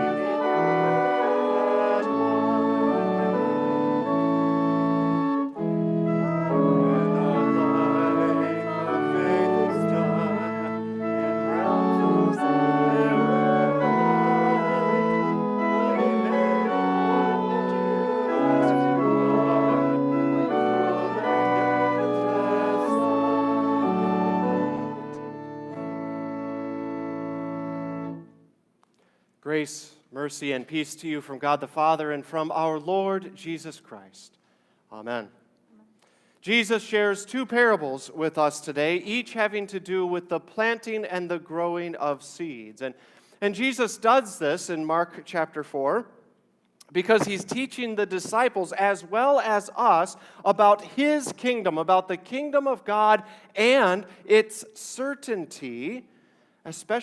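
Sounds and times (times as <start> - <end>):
church organ chords: 0.0 - 28.5
pastor speaking: 6.3 - 17.6, 18.2 - 19.5, 29.4 - 35.4, 36.4 - 46.2, 46.8 - 57.0.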